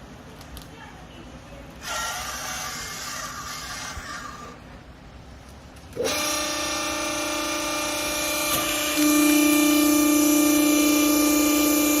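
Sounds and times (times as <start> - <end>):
hydraulic pump whining: 1.8 - 4.9, 5.8 - 12.0.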